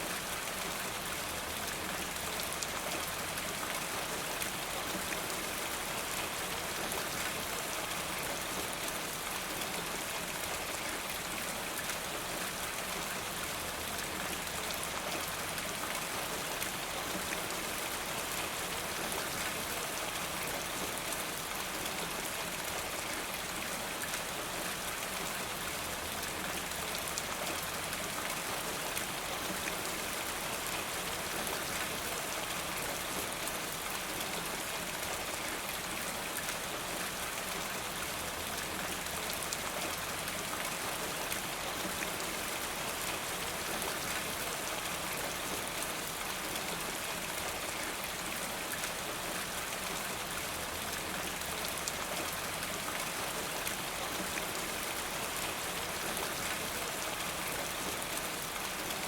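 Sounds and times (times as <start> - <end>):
steady rain patter: 0.0 - 59.0.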